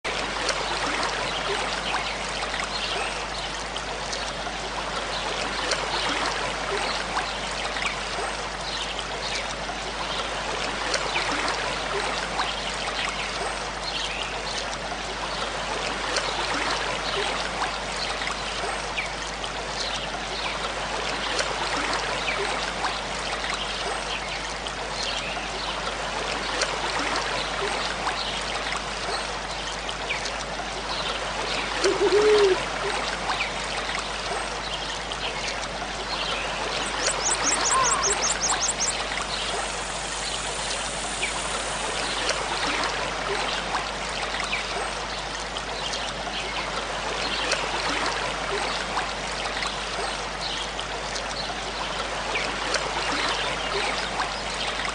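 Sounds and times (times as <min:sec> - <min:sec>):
water trickling and splashing: 0:00.0 - 0:54.9
water drops plinking: 0:36.8 - 0:39.2.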